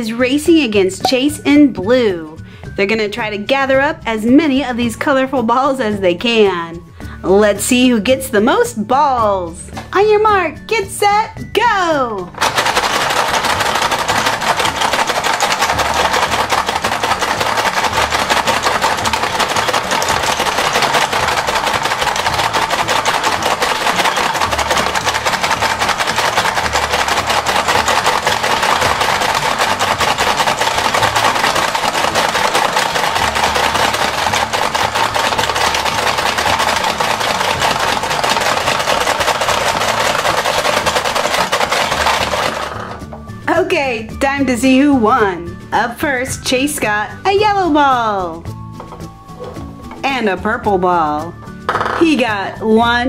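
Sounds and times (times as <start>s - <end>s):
toy motor whir: 12.4s - 43.0s
toy plastic clatter: 12.4s - 43.1s.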